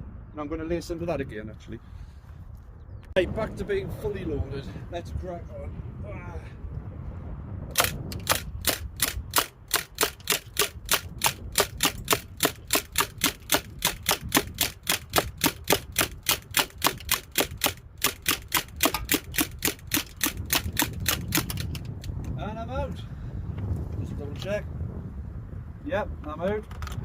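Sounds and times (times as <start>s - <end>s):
bb gun firing shots: 7.7s - 21.8s.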